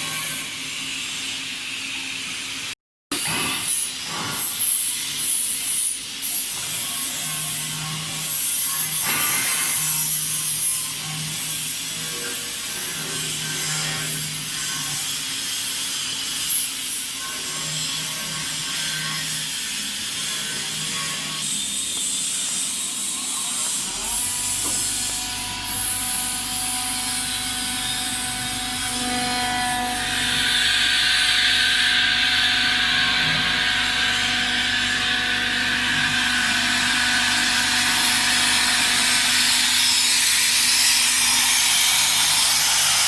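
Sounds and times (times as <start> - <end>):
sandblaster hissing rush: 36.4 - 43.0.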